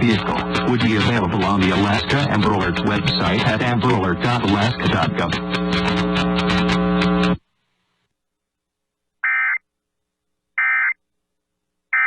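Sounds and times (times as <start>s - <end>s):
broadcast audio: 0.0s - 7.4s.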